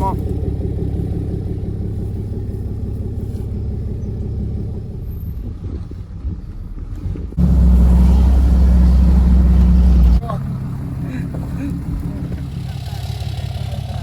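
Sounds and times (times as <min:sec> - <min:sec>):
tractor engine running: 0:00.0 - 0:14.0.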